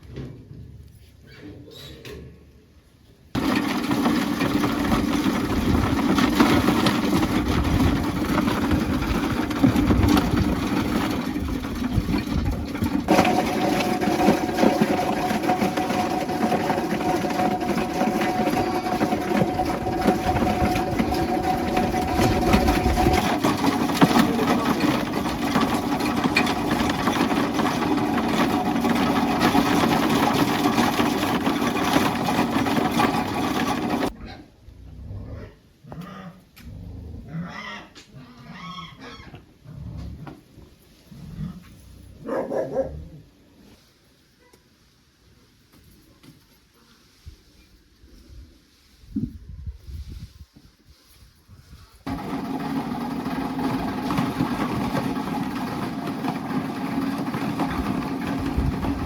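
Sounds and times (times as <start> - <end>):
machine motor running: 3.4 - 34.1, 52.1 - 59.0.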